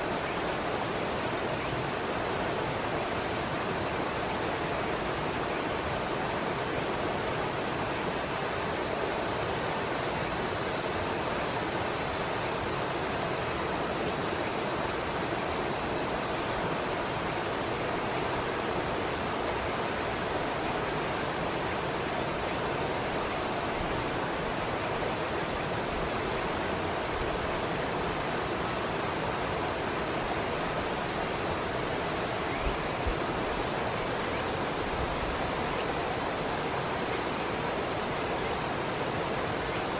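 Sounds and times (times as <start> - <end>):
insects buzzing: 0.0 - 39.9.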